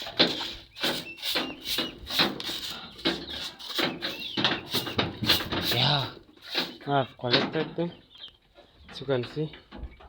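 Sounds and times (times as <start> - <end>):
high chick peeps: 0.0 - 6.7
scrapes and knocks: 0.0 - 7.9.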